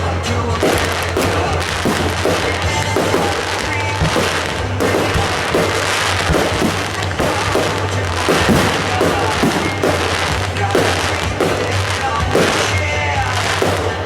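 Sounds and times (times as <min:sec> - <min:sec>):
fireworks crackling and popping: 0:00.0 - 0:14.0.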